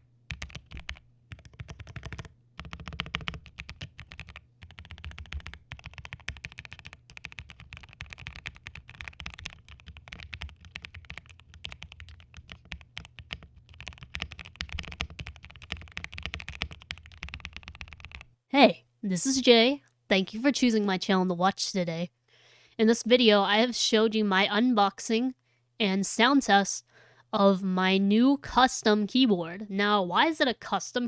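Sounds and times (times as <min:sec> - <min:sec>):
mechanical keyboard typing: 0:00.3 - 0:18.3.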